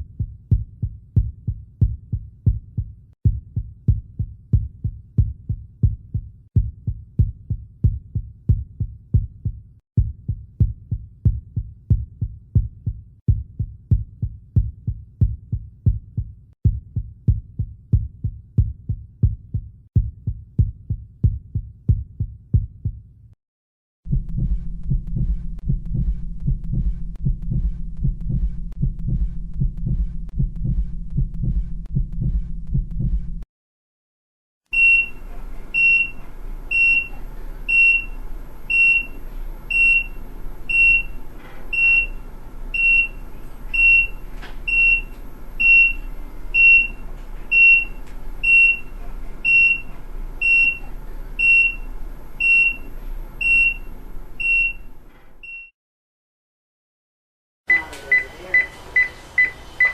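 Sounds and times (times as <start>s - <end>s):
heartbeats pulsing: 0.0s - 23.1s, 24.1s - 33.5s, 37.7s - 50.8s, 51.4s - 54.9s
heart monitor beeping: 24.1s - 33.3s, 34.7s - 55.7s, 57.7s - 59.9s
operating room background noise: 34.8s - 55.0s.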